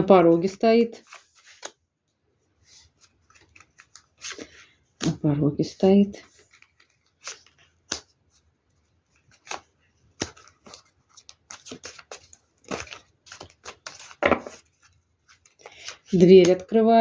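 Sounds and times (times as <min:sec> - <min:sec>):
cards snapping and rustling: 0:03.0 - 0:05.3, 0:06.4 - 0:08.2, 0:09.1 - 0:16.7.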